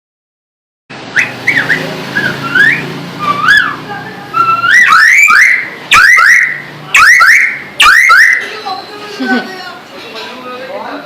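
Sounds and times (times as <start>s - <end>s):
mynah whistling like a car horn: 1.1s - 8.4s.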